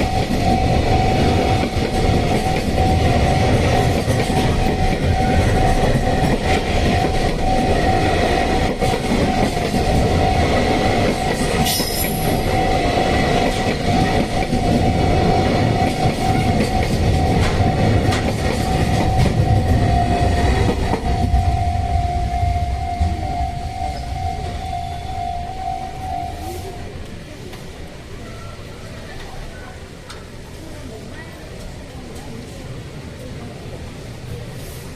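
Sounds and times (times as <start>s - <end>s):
crossing warning bell high tone: 0.0s - 27.0s
train wheels rumbling on rails: 0.0s - 34.9s.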